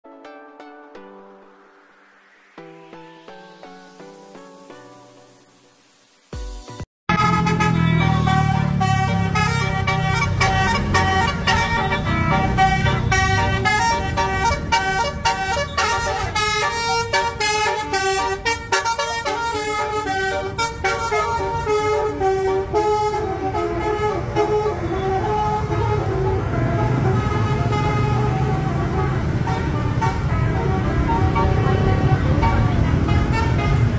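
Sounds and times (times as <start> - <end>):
bus engine rumble: 7.1 - 33.9
multi-tone bus air horn melody: 7.1 - 33.9.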